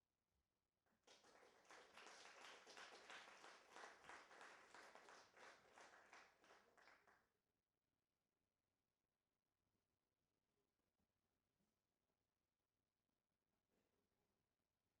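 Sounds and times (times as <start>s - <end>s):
faint applause: 1.0s - 7.2s.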